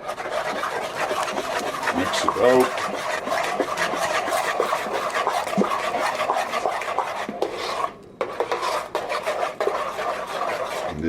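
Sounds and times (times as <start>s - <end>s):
spoon scraping a pan: 0.0s - 11.0s.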